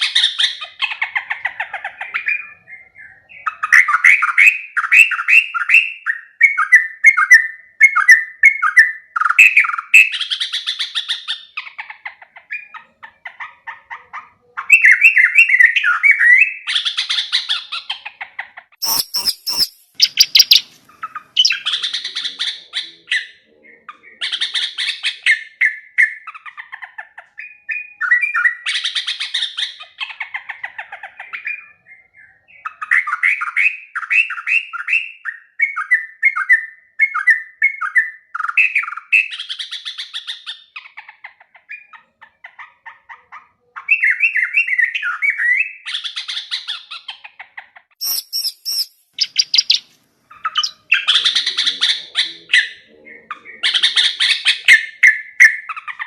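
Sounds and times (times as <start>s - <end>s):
bulbul chattering song: 0.0s - 35.4s, 47.9s - 56.0s.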